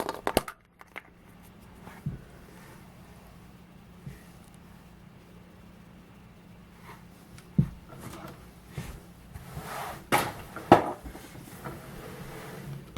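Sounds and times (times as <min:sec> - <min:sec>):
objects clicking and knocking: 0:00.0 - 0:01.2
faint steady hum: 0:00.0 - 0:12.9.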